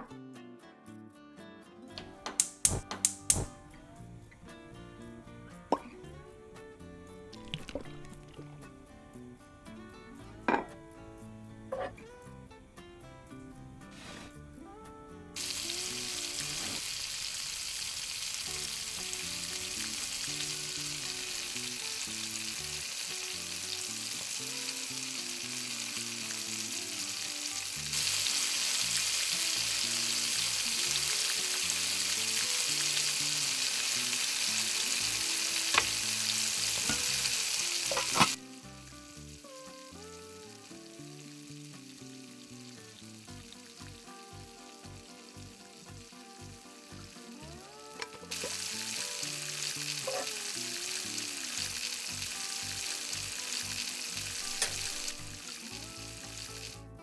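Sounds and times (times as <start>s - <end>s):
food sizzling in a pan: 2.4s - 3.6s, 15.4s - 57.0s.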